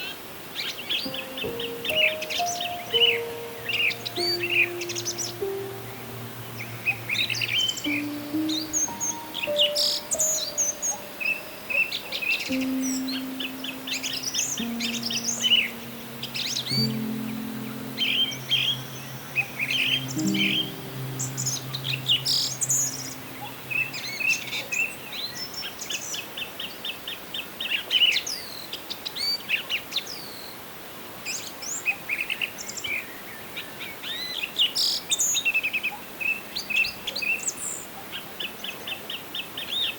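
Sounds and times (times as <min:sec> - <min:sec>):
small birds chirping: 0:00.0 - 0:26.2.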